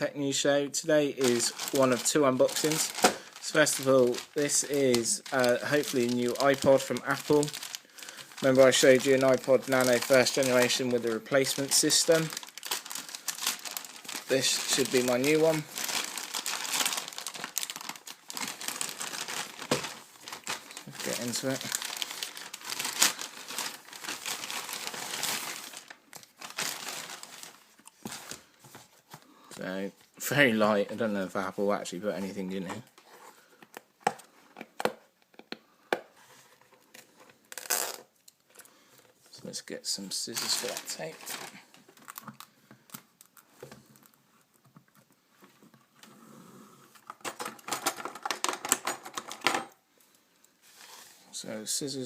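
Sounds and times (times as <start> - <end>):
packaging crinkling: 1.2 - 28.6, 40.3 - 44.2.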